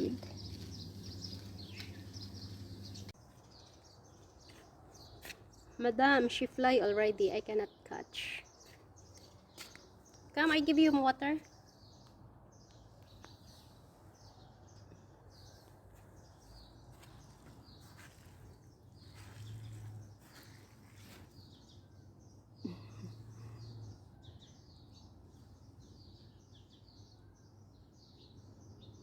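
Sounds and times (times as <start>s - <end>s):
low hum: 0.0s - 3.2s
small birds chirping: 0.0s - 29.0s.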